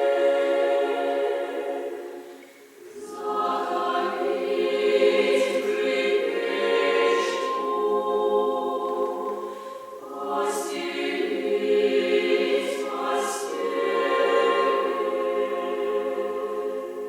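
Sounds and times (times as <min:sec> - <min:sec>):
choir singing unaccompanied: 0:00.0 - 0:17.0
breath: 0:02.2 - 0:02.7, 0:09.4 - 0:10.0.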